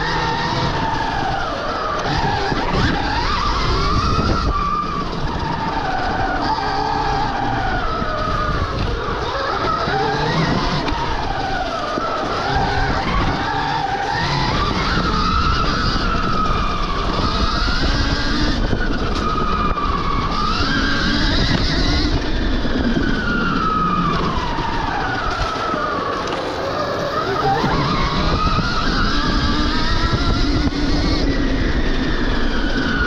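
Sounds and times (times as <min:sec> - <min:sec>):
electric motor whining: 0:00.0 - 0:33.0
steady rumbling noise: 0:00.0 - 0:33.0.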